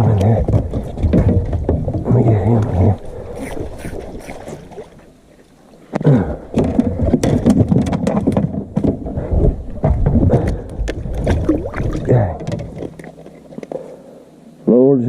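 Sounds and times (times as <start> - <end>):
clattering knocks in a boat: 0.0 - 3.0, 6.0 - 11.5, 12.3 - 13.1.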